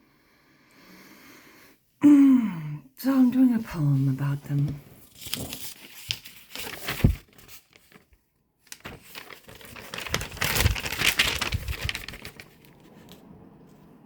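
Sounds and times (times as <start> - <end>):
crinkling and rustling: 3.7 - 13.9.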